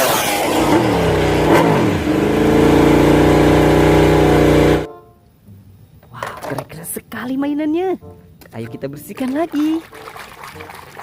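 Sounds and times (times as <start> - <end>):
motorcycle engine revving: 0.0 - 4.9.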